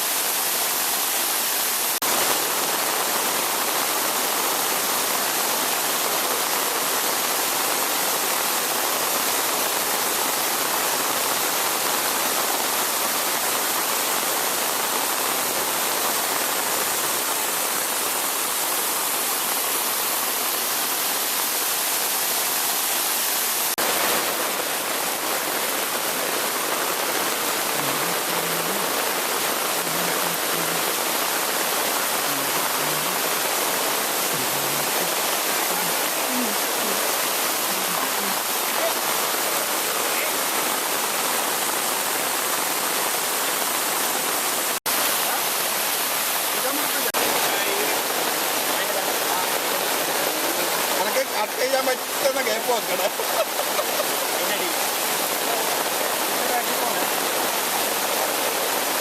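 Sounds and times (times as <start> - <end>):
waterfall rushing: 0.0 - 59.0.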